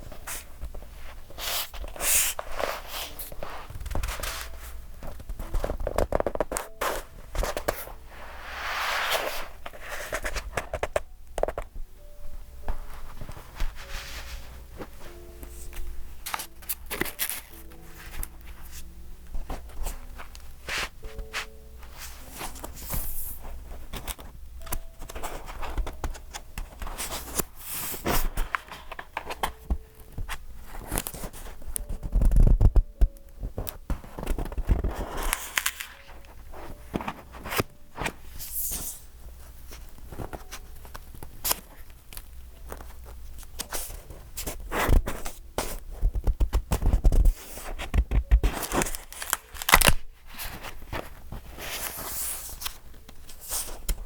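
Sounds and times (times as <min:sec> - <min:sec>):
paper pages rustling: 0:00.0 - 0:11.6, 0:12.6 - 0:54.0.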